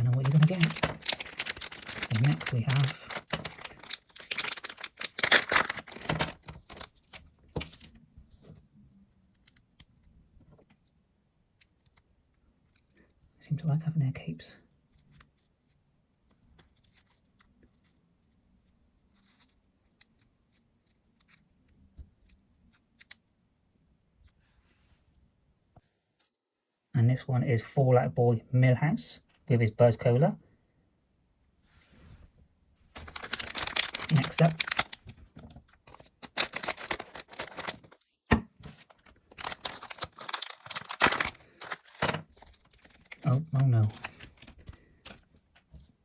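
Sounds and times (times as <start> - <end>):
sharp plastic crack: 0.0 - 7.9, 33.0 - 43.3
plastic packet crinkling: 0.0 - 8.0, 33.0 - 38.0, 38.6 - 45.3.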